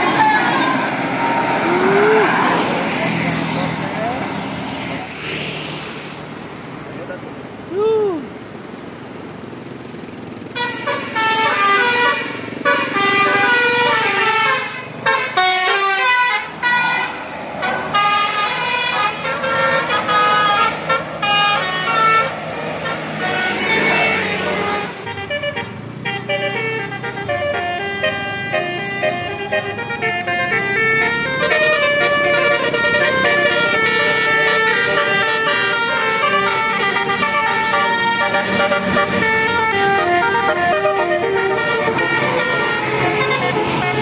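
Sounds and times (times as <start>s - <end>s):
traffic noise: 0.0s - 44.0s
vehicle horns honking: 10.6s - 44.0s.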